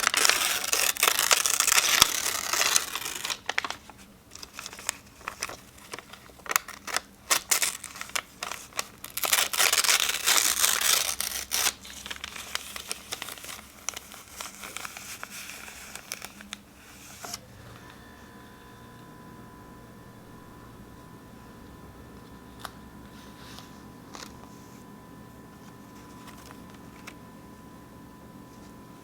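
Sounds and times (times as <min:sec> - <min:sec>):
paper ripping: 0:00.0 - 0:17.7
paper crackling: 0:00.0 - 0:24.9, 0:25.5 - 0:27.3
paper crinkling and rustling: 0:00.0 - 0:24.9, 0:25.5 - 0:27.3.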